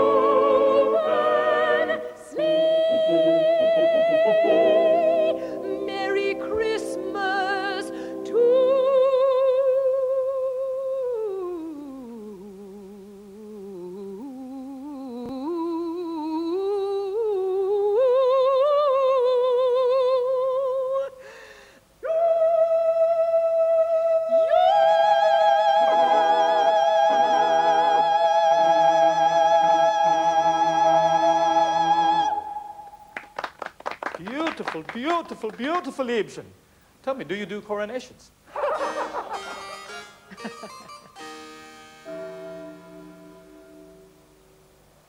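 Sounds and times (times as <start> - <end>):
steady held notes: 0.0 - 10.1, 38.6 - 45.0
high singing voice with vibrato: 0.0 - 21.2, 22.0 - 33.0.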